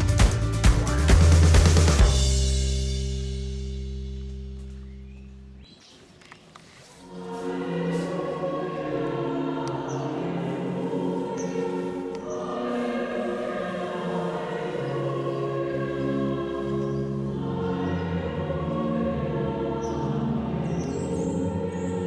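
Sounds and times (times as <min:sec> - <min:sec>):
choir singing sustained chords: 0:07.0 - 0:22.0.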